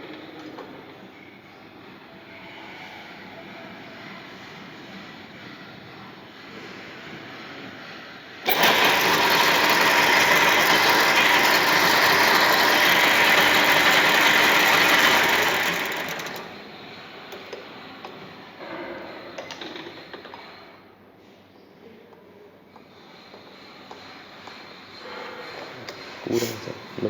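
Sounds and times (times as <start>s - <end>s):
metal lathe cutting: 8.5s - 16.6s.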